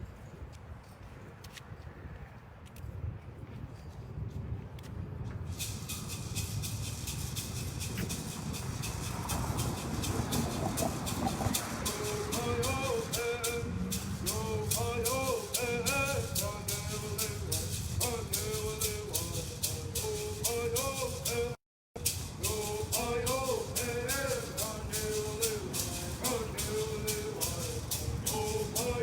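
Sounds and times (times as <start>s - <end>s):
gourd rattles shaking: 5.5s - 29.0s
men singing together: 8.0s - 29.0s.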